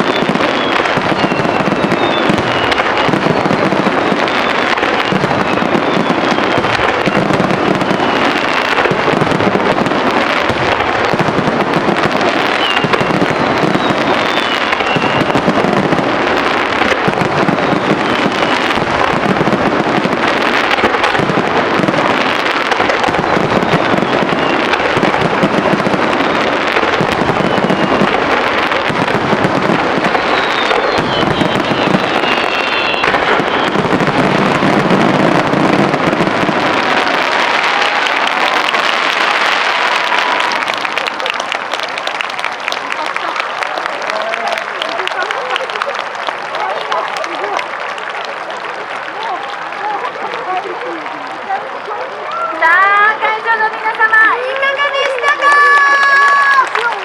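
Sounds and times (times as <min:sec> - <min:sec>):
firework whistles: 0:00.0 - 0:42.9
firework shell bursts and crackling: 0:00.0 - 0:50.7.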